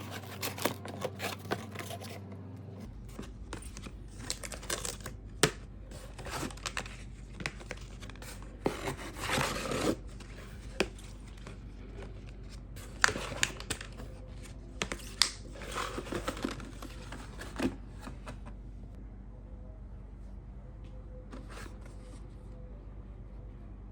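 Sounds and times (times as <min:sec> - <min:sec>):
plastic packaging crinkling: 0:00.0 - 0:02.2, 0:03.2 - 0:17.7.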